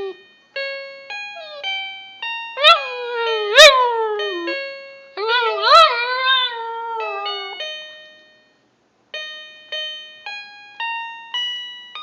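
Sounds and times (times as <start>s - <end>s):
dog howling: 1.4s - 1.7s, 2.6s - 4.6s, 5.2s - 7.6s.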